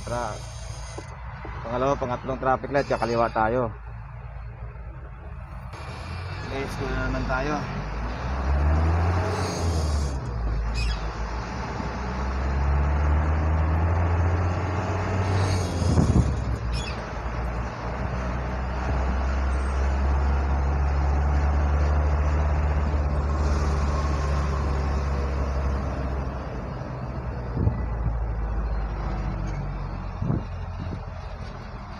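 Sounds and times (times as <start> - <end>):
diesel truck engine droning: 0.0 - 31.9.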